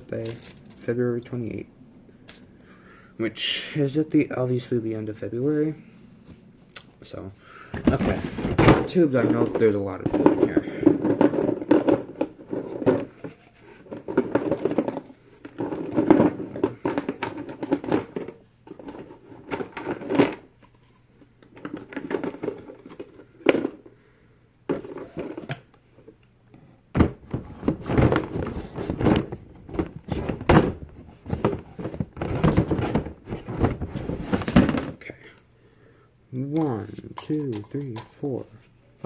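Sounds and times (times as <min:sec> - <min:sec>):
plastic toys clattering: 0:00.0 - 0:00.9, 0:07.8 - 0:20.5, 0:21.4 - 0:23.9, 0:27.0 - 0:35.0, 0:36.6 - 0:38.3.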